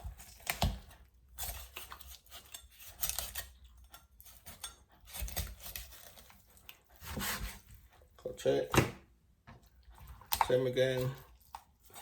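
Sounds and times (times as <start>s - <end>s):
handling raw meat: 0.0s - 12.0s
knife clicking and scraping: 1.4s - 6.8s.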